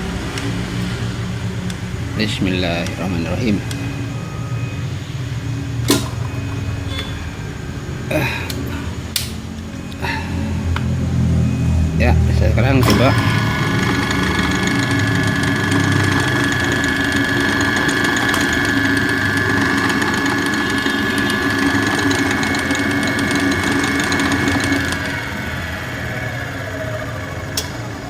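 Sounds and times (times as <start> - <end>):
electric motor humming and whining: 9.5 - 28.0.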